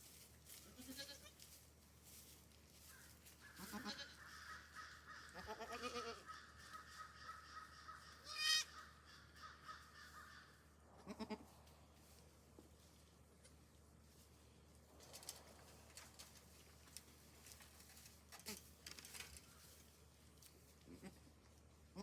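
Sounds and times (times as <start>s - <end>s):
goats bleating: 0.6s - 1.4s, 3.5s - 8.9s, 11.0s - 11.5s.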